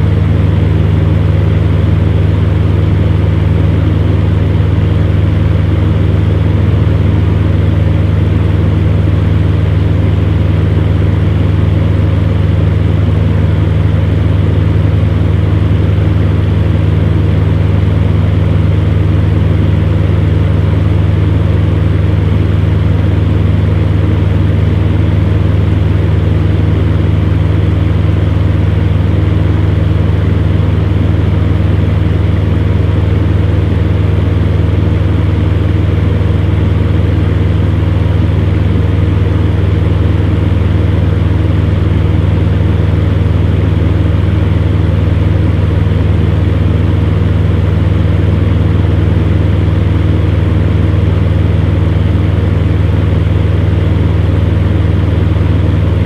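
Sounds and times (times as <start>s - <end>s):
electric fan running: 0.0s - 56.0s.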